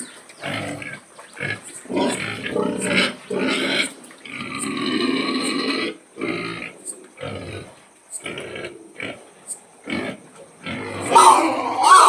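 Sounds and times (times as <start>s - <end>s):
pigs grunting: 0.4s - 12.0s.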